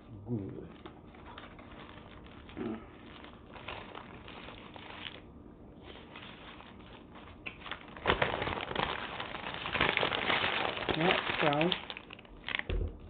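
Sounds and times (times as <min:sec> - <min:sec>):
food wrapping crinkling: 0:00.6 - 0:12.7.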